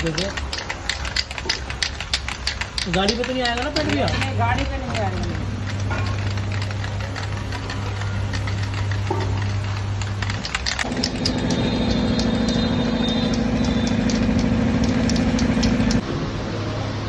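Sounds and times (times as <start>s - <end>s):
motor-driven machine running: 0.0s - 16.0s
low machine hum: 3.7s - 16.0s.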